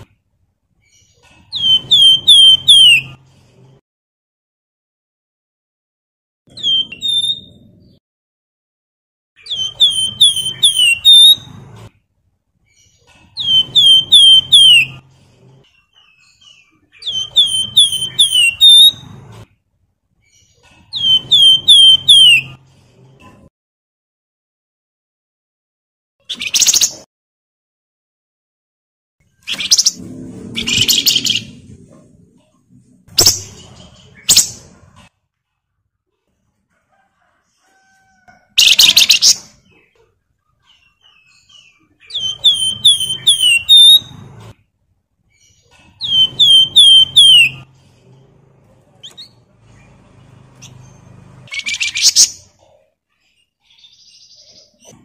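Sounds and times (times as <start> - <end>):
bird singing whistled phrases: 6.6 - 7.6, 9.4 - 11.4, 17.0 - 19.0, 42.1 - 44.1.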